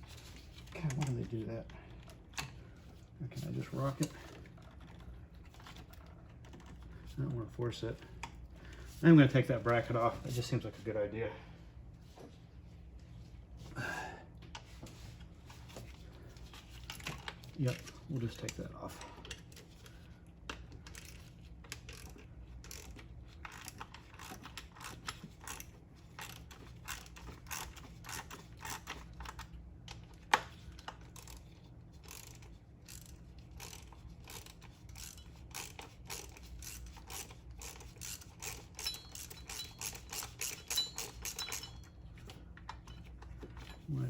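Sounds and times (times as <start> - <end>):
ratchet wrench clicking: 20.8 - 29.5, 30.8 - 41.8.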